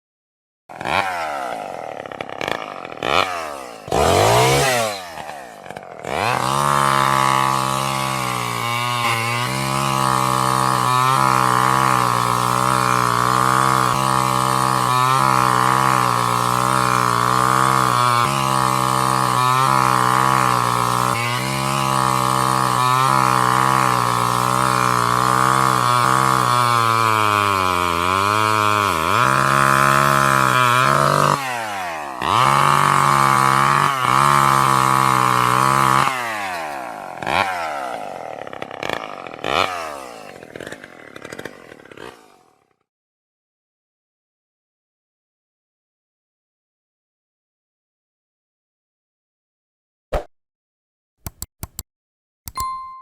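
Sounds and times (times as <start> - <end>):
chainsaw revving: 0.7 - 42.9.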